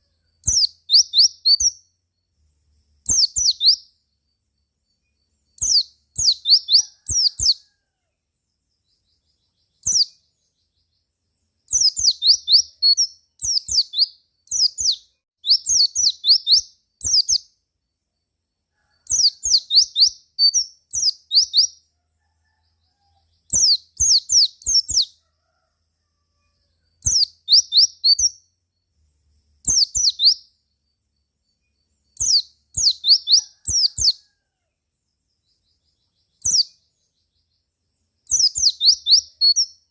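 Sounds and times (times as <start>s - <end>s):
bird chirping in bursts: 0.4s - 2.0s, 2.9s - 4.0s, 4.9s - 7.6s, 8.8s - 17.6s, 19.0s - 21.8s, 23.4s - 25.2s, 27.0s - 28.6s, 29.5s - 34.2s, 35.5s - 37.6s, 38.2s - 39.9s.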